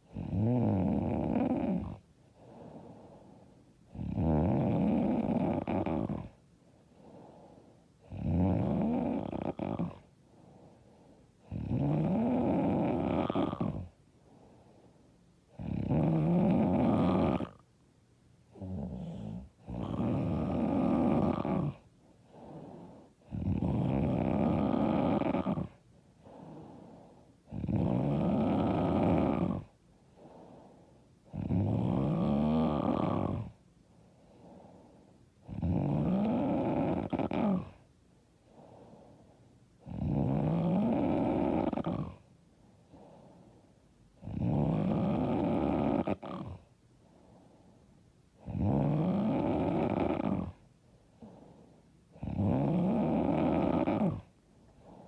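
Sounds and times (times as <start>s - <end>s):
woman snoring: 0.0s - 6.4s, 7.0s - 10.1s, 11.4s - 14.0s, 15.5s - 17.6s, 18.5s - 30.6s, 31.2s - 33.6s, 34.4s - 37.8s, 39.8s - 42.3s, 44.2s - 46.7s, 48.4s - 50.6s, 51.2s - 54.3s
quiet breathing: 0.0s - 55.0s.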